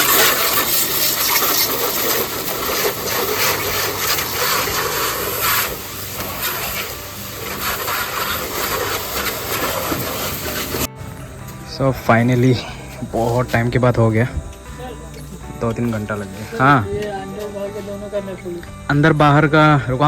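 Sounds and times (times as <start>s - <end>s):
water spraying on car bodywork: 0.0s - 11.1s, 12.1s - 14.2s.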